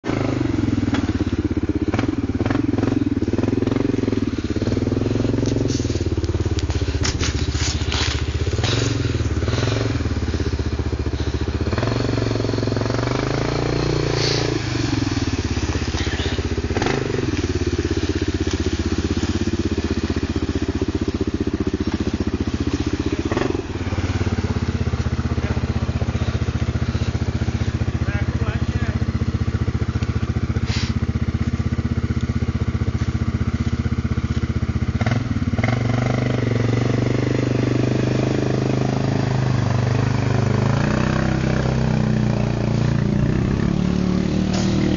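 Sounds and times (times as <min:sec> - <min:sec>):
vehicle engine under load: 0:00.0 - 0:44.9
sharp knocks and crackles: 0:05.2 - 0:09.8.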